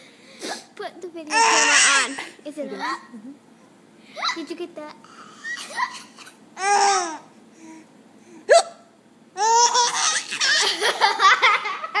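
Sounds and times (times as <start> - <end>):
baby laughing: 5.3 - 7.2, 9.4 - 12.0
woman hiccuping: 8.5 - 8.9.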